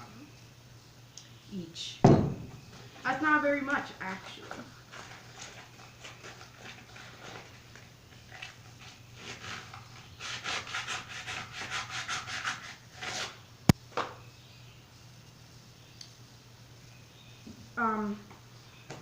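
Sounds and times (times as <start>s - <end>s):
fast rubbing strokes: 8.3s - 13.4s.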